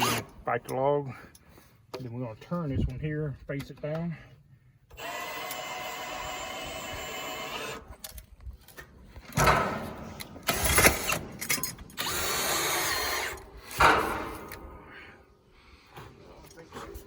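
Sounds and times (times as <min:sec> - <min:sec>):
electric drill running: 0:00.0 - 0:00.3, 0:04.9 - 0:07.9, 0:12.0 - 0:13.5.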